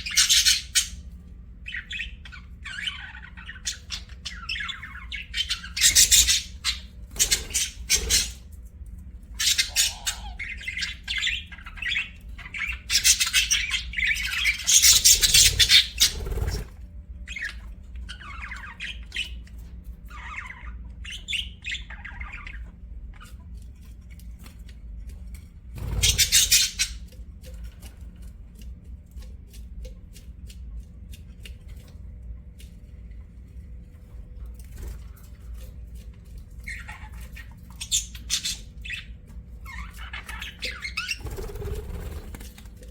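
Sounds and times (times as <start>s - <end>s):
budgerigars chirping and squawking: 0.0s - 8.6s, 9.2s - 23.5s, 25.6s - 28.0s, 34.7s - 42.9s.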